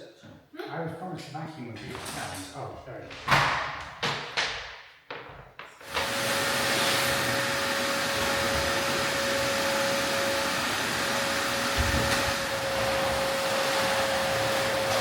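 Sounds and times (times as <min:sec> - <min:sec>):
vacuum cleaner running: 0:05.8 - 0:15.0.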